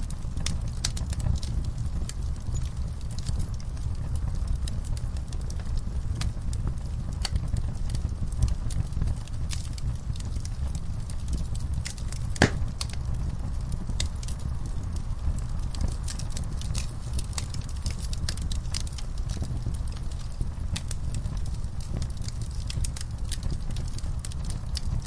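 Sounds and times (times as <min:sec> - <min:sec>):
logs crackling in fireplace: 0:00.0 - 0:25.0
steady low rumble: 0:05.7 - 0:23.3.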